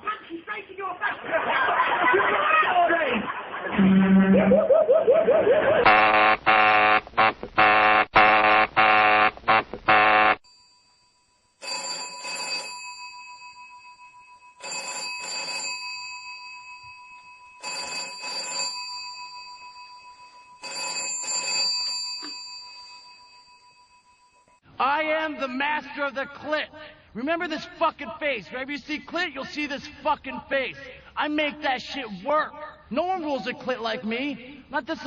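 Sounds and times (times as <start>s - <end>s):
loud held multi-tone sound: 3.5s - 10.4s
telephone ringing: 9.9s - 24.6s.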